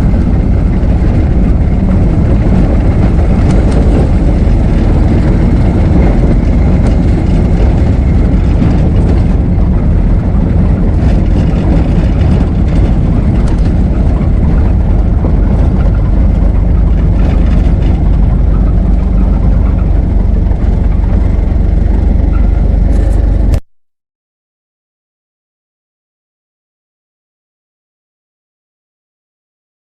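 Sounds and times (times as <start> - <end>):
car engine running: 0.0 - 23.6.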